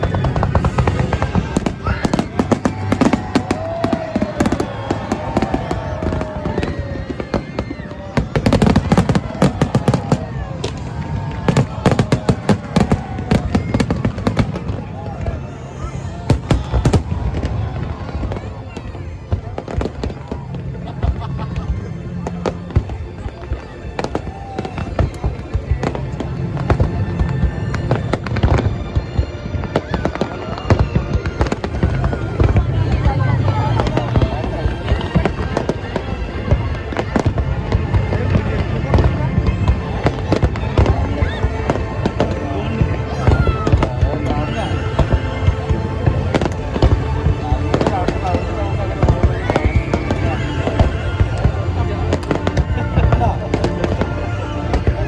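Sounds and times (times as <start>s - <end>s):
fireworks whistles: 0.0s - 20.4s
fireworks bangs and crackles: 0.0s - 55.0s
music: 0.0s - 55.0s
voices: 0.0s - 55.0s.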